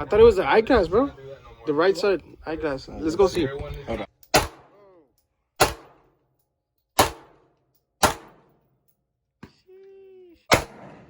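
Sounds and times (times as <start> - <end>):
gunshots with echo: 4.3 - 4.8, 5.6 - 6.1, 7.0 - 8.6, 10.5 - 11.0.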